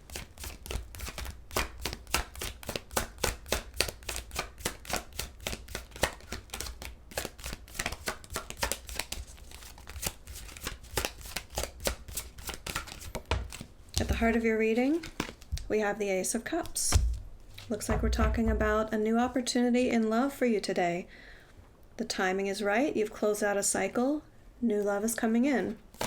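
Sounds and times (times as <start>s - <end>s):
cards being shuffled: 0.1s - 15.7s.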